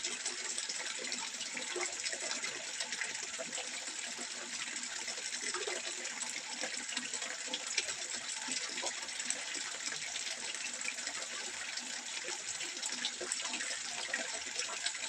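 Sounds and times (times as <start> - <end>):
water trickling into pond: 0.0 - 15.0.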